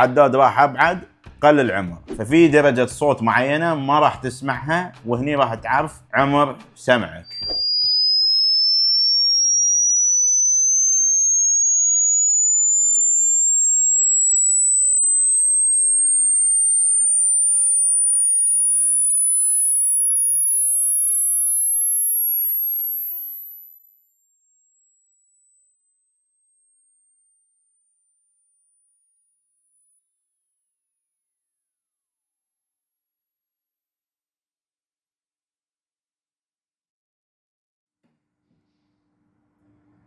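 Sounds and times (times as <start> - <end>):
rising test tone sweep: 7.3 - 32.4.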